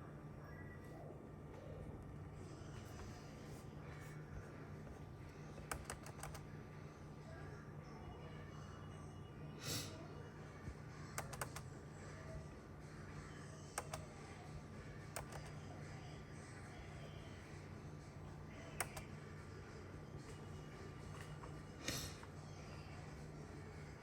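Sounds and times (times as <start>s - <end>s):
steady low hum: 0.0s - 24.0s
computer keys clicking: 5.6s - 6.5s, 11.1s - 11.7s, 13.7s - 14.1s, 15.0s - 15.6s, 18.6s - 19.1s.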